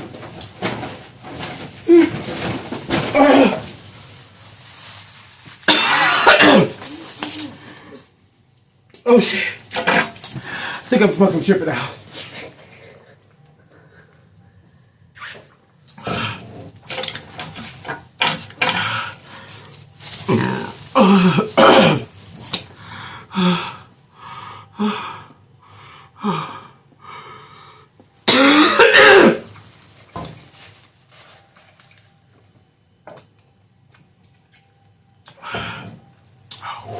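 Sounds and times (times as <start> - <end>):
person coughing: 5.7 - 7.5, 20.4 - 22.1, 28.3 - 29.5.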